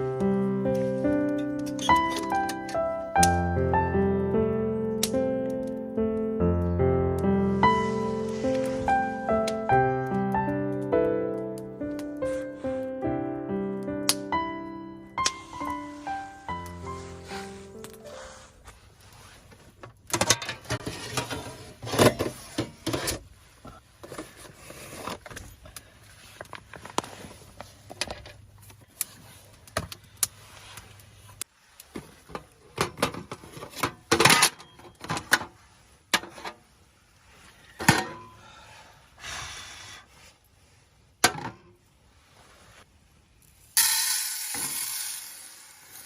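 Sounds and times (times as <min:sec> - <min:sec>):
scraping and rubbing: 0:20.6 - 0:25.4.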